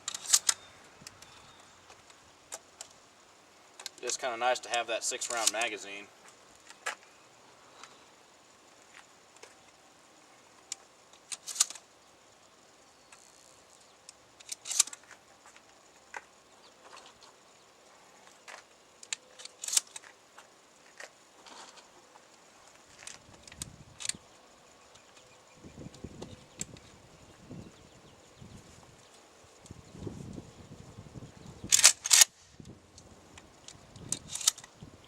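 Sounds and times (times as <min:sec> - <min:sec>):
shotgun metallic clicks and clacks: 0:03.8 - 0:05.8, 0:31.7 - 0:32.4, 0:34.1 - 0:34.7.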